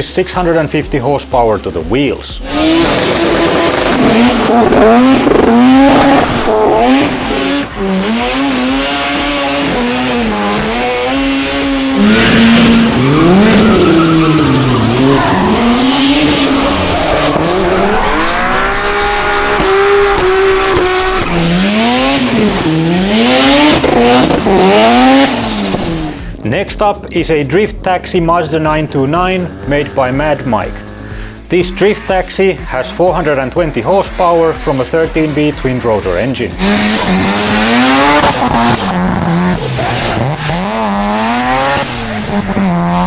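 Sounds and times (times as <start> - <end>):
tyres squealing and skidding: 2.4 - 26.2, 34.2 - 43.0
engine revving hard: 2.4 - 26.4, 28.2 - 43.0.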